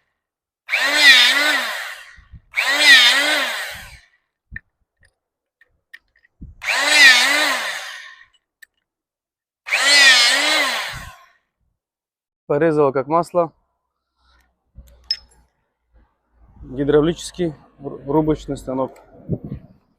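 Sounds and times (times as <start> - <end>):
electric pump motor whining: 0.7 - 4.1, 6.4 - 8.3, 9.7 - 11.2.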